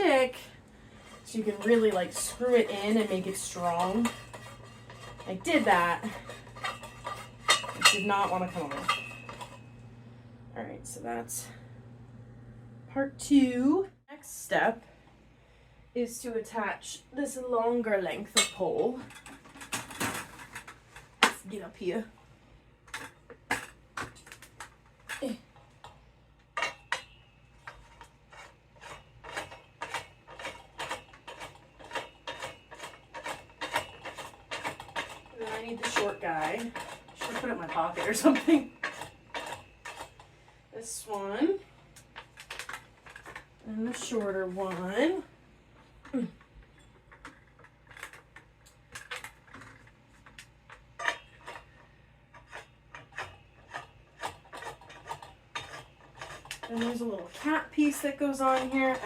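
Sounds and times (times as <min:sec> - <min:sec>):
metallic ratcheting rubs: 0:00.0 - 0:09.8, 0:26.6 - 0:45.2, 0:45.8 - 0:59.0
metal pole sections clicking: 0:01.0 - 0:09.8, 0:22.9 - 0:40.3, 0:45.8 - 0:59.0.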